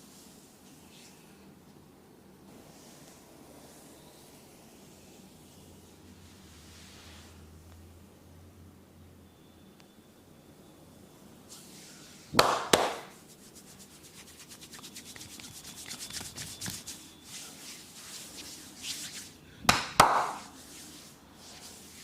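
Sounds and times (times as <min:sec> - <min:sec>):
hands rubbing hair and skin: 0:11.5 - 0:22.0
hands smacking head: 0:12.4 - 0:13.2, 0:19.7 - 0:20.5.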